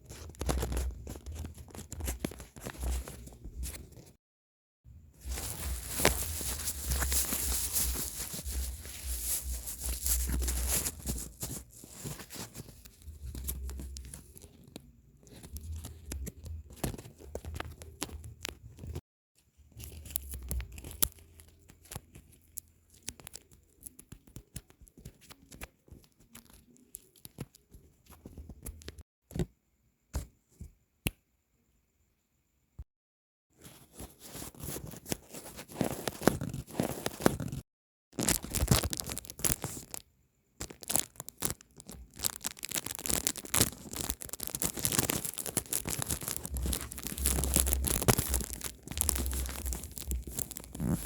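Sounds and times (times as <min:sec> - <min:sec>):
paper and tape crinkling: 0:00.0 - 0:04.1, 0:05.2 - 0:19.0, 0:19.7 - 0:29.0, 0:33.7 - 0:37.6, 0:38.2 - 0:40.0, 0:40.6 - 0:51.0
low handling rumble: 0:46.5 - 0:50.4.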